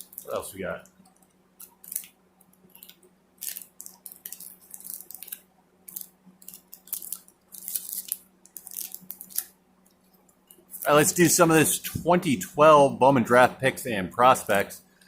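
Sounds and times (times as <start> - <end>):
faint steady hum: 0.0 - 15.0
card wrapper crinkling: 2.8 - 9.5.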